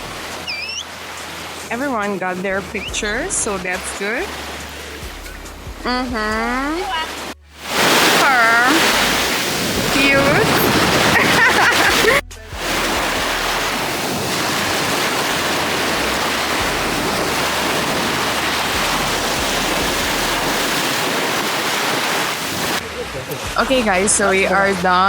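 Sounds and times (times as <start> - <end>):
sea waves: 0.0 - 25.0
wind: 0.0 - 25.0
people talking: 1.7 - 7.2, 8.0 - 9.2, 9.8 - 12.7, 22.8 - 25.0.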